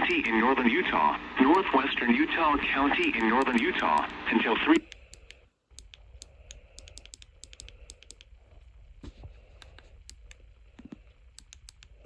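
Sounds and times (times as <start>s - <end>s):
low steady hum: 0.0s - 12.0s
typing on computer keyboard: 4.8s - 8.3s.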